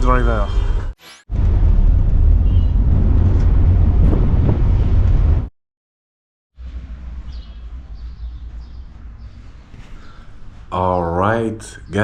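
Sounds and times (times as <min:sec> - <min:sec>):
heavy low rumble: 0:01.3 - 0:05.5
outdoor background noise: 0:06.6 - 0:12.0.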